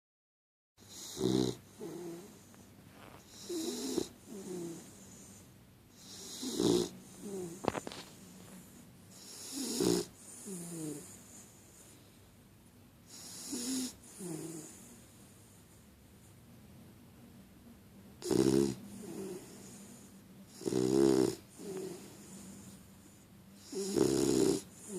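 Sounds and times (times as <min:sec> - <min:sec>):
snoring: 0:00.9 - 0:08.0, 0:09.1 - 0:11.5, 0:13.1 - 0:15.0, 0:18.2 - 0:22.8, 0:23.6 - 0:24.9.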